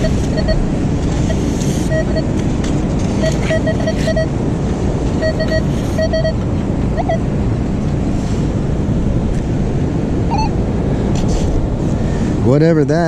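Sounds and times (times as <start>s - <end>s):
metal detector beeps: 0.0s - 0.6s, 1.3s - 2.3s, 3.2s - 4.3s, 5.2s - 7.2s, 10.3s - 10.5s
wind rumbling on microphone: 0.0s - 13.0s.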